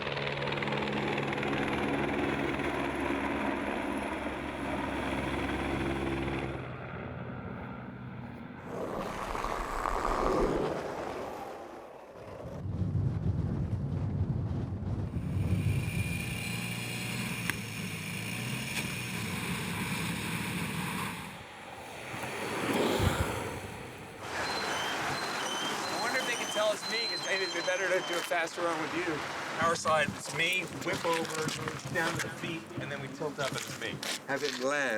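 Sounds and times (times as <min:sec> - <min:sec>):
vehicles on road: 0:00.0 - 0:12.6, 0:15.1 - 0:34.9
wind on microphone: 0:08.6 - 0:16.4, 0:21.9 - 0:26.0.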